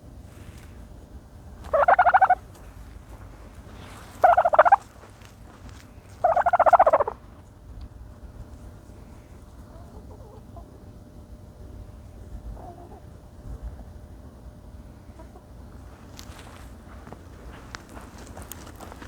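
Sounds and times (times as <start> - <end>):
turkey gobbling: 1.6 - 2.6, 4.0 - 4.9, 6.1 - 7.2, 9.7 - 10.7.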